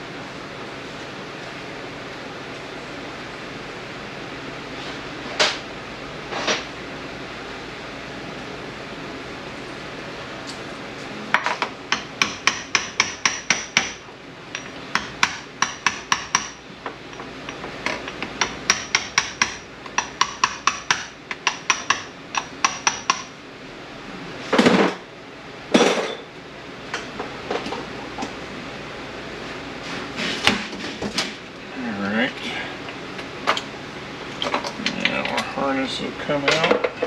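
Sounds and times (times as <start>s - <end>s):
hammer tapping on metal: 11.4s - 23.3s.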